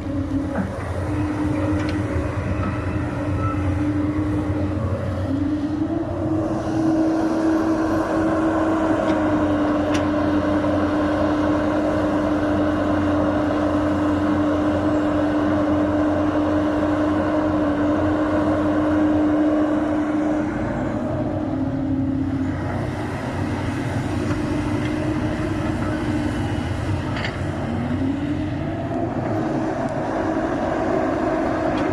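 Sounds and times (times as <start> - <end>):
excavator diesel engine whining: 0.0 - 31.9.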